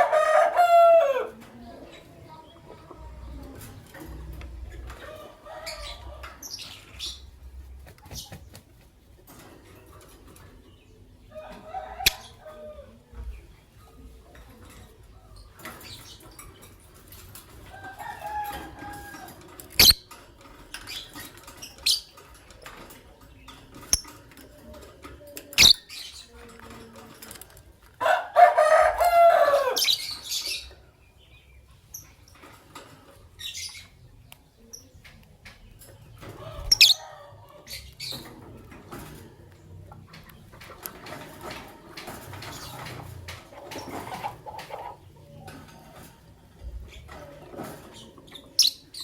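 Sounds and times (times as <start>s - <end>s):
lovebirds chirping: 25.4s - 26.8s.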